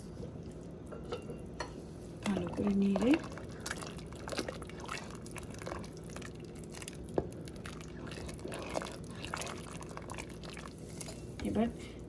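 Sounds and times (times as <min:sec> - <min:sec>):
spoon stirring thick soup: 0:01.6 - 0:11.3.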